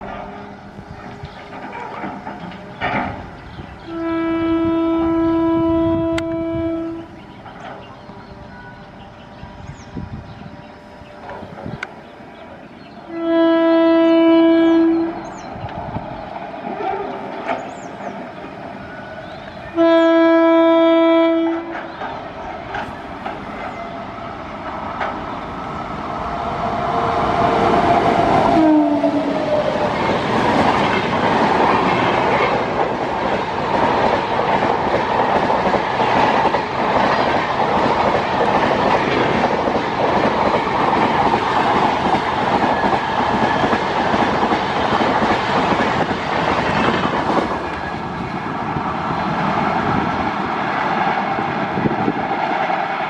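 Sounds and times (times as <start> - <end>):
train wheel clatter: 0.0 - 4.0, 6.1 - 8.8, 15.2 - 19.6, 21.4 - 25.8, 26.8 - 53.0
train coaches rushing past: 0.0 - 53.0
train horn: 3.8 - 7.3, 7.9 - 11.2, 13.0 - 15.4, 19.0 - 22.0, 27.0 - 29.8.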